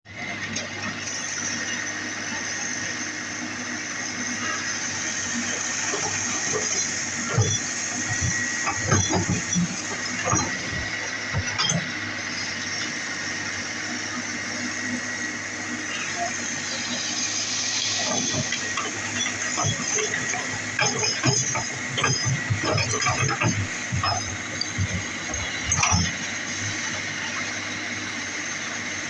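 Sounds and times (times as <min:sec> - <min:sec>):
excavator engine humming with whine: 0:00.1 - 0:29.0.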